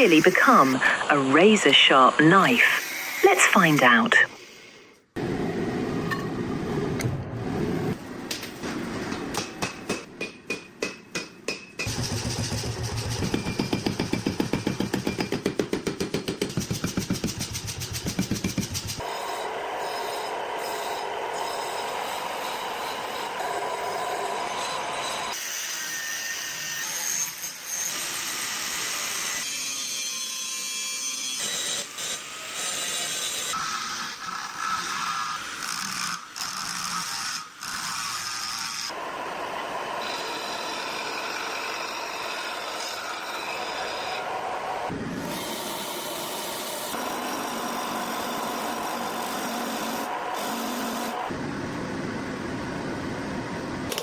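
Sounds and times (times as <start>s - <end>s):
hammer striking steel: 9.2s - 19.1s
power tool grinding steel: 16.5s - 39.0s, 40.0s - 44.4s.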